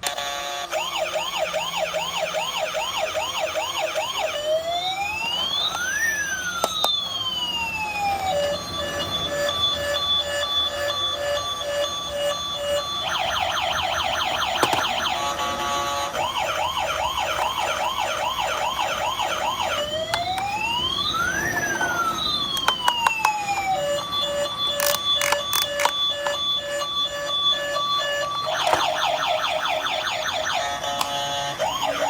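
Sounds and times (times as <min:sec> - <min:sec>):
electronic toy siren: 0:00.0 - 0:32.0
clicks: 0:06.6 - 0:07.0, 0:14.5 - 0:15.1, 0:22.5 - 0:23.7, 0:24.7 - 0:26.4.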